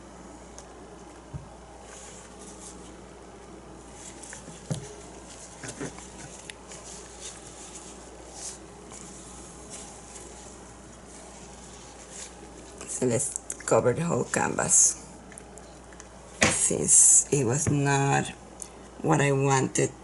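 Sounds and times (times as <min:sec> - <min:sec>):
low room hum: 0:00.0 - 0:20.0
canvas rustling: 0:01.3 - 0:13.2.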